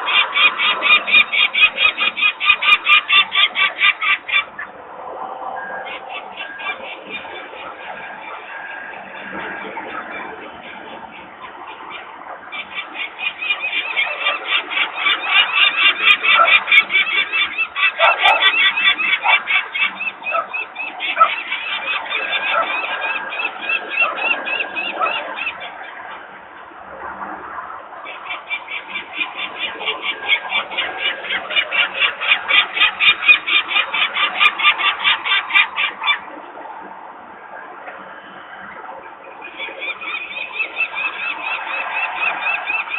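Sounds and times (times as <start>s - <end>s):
falcon harsh alarm calls: 12.6s - 25.7s.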